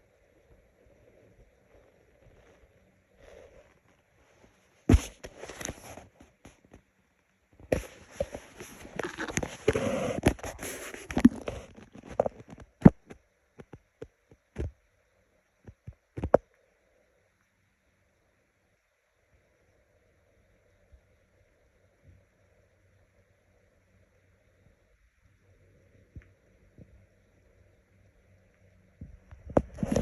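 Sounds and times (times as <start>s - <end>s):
stomach growling and gurgling: 7.6s - 14.8s, 29.0s - 30.0s.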